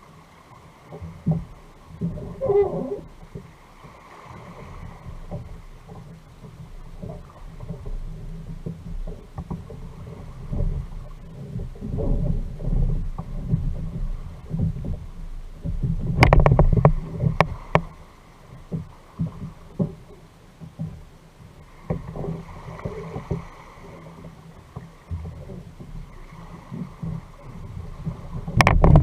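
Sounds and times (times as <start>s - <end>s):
water low rumble: 0.0s - 29.0s
knocks and clicks on kayak: 5.1s - 18.0s, 21.8s - 29.0s.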